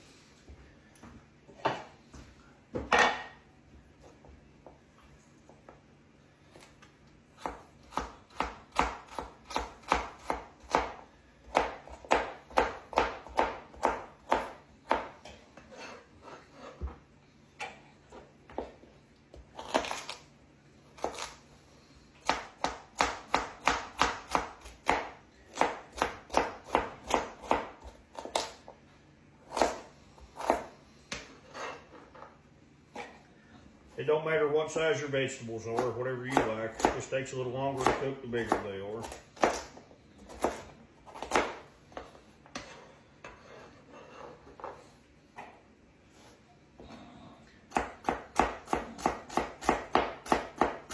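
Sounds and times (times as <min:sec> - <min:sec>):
knife chopping on cutting board: 0:07.4 - 0:17.0, 0:18.1 - 0:20.2, 0:21.0 - 0:21.4, 0:22.2 - 0:28.6, 0:29.5 - 0:32.3, 0:35.8 - 0:37.0, 0:37.8 - 0:44.8, 0:47.7 - 0:50.9.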